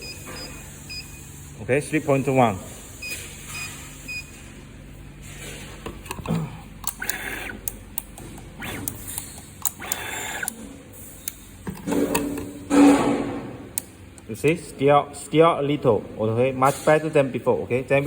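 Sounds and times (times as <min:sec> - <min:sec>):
short machine beeps: 0:00.0 - 0:01.3
machine clicks: 0:06.8 - 0:10.6.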